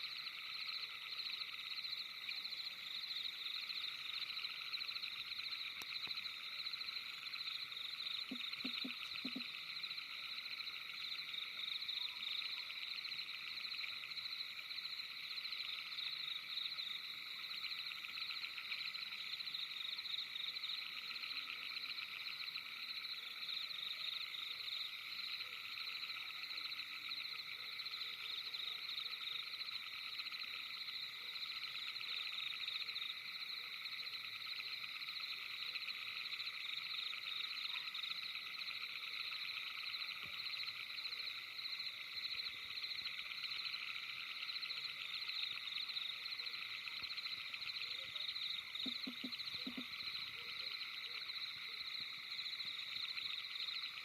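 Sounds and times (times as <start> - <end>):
frogs calling: 0.0 - 54.0.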